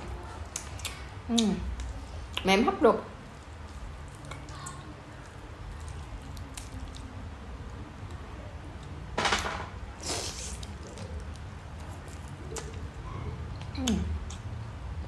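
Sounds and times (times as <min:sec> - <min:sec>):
person chewing food: 0:00.0 - 0:02.5, 0:03.2 - 0:08.3, 0:10.0 - 0:13.0, 0:13.6 - 0:14.6.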